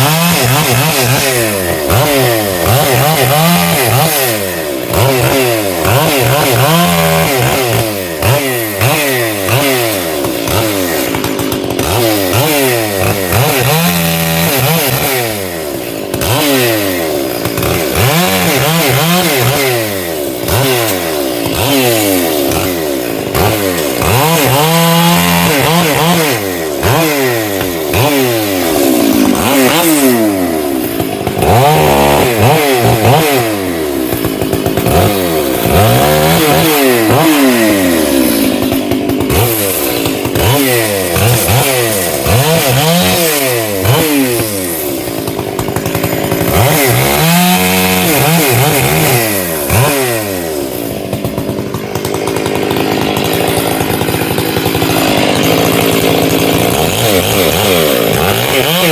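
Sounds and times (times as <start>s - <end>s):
chainsaw cutting wood: 0.0s - 58.9s.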